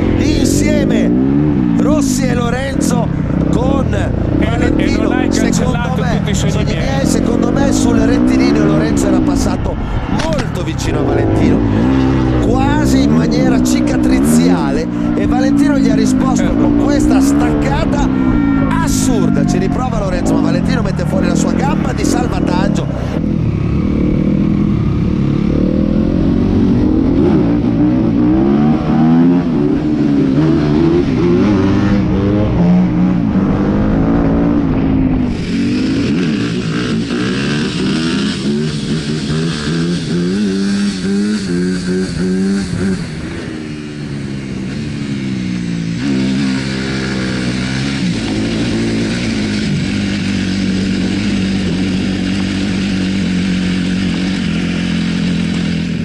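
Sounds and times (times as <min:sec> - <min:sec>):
motorcycle engine revving: 0:00.0 - 0:56.0.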